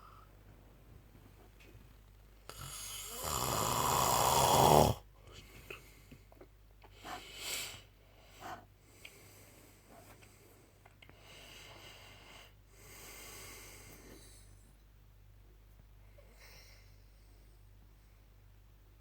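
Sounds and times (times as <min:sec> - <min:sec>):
man snoring: 0:02.5 - 0:05.0
soft breaths: 0:05.2 - 0:14.8, 0:15.9 - 0:18.4.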